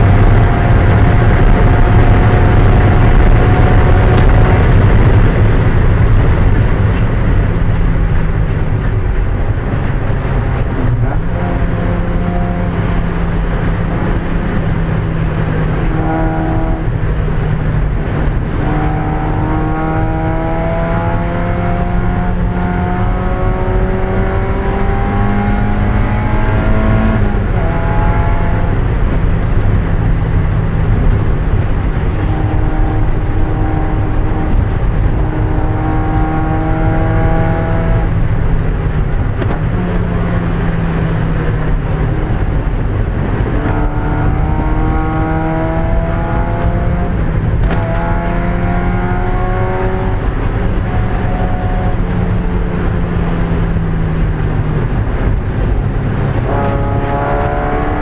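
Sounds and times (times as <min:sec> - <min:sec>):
car engine racing through gears: 0:00.0 - 0:58.0
road and wind noise: 0:00.0 - 0:58.0.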